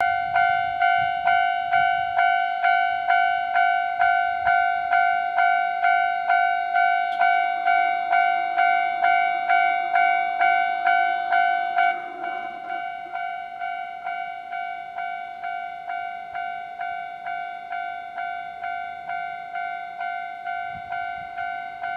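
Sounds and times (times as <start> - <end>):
level-crossing warning bell: 0.0 - 21.9.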